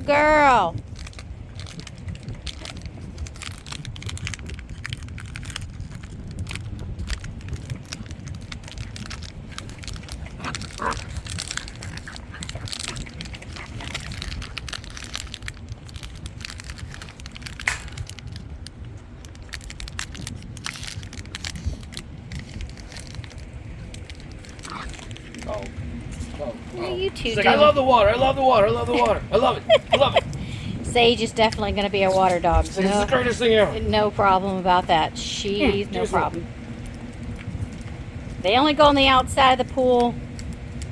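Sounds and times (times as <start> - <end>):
dog chewing toy: 0.8 - 18.4, 19.3 - 27.3.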